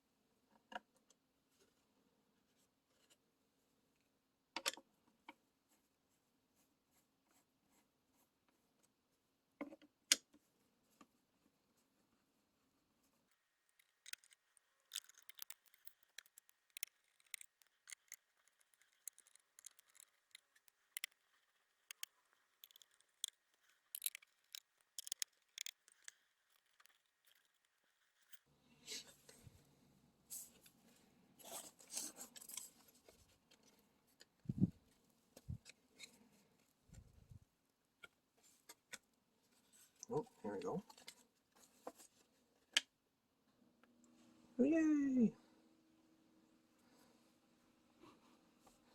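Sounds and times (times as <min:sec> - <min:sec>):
rustling and handling noise: 0:13.3 - 0:28.4
small clicks of parts handled: 0:13.3 - 0:28.4.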